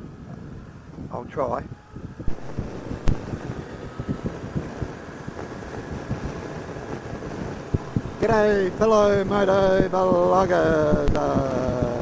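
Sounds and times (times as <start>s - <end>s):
motorcycle engine and wind rumble: 0.0s - 12.0s
microphone pops and clicks: 2.3s - 3.5s, 9.6s - 12.0s.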